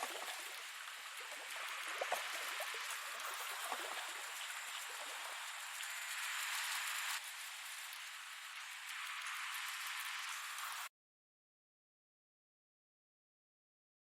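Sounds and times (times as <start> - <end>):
louder raindrops: 0.0 - 10.9
steady rain: 0.0 - 10.9.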